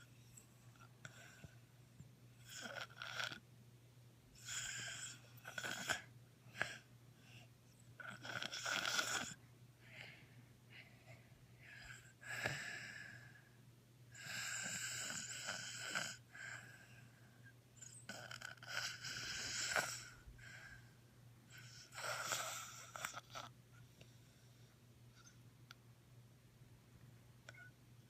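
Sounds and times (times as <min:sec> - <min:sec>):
person snoring: 0:04.4 - 0:06.1, 0:08.0 - 0:09.4, 0:14.2 - 0:16.2, 0:18.1 - 0:20.2.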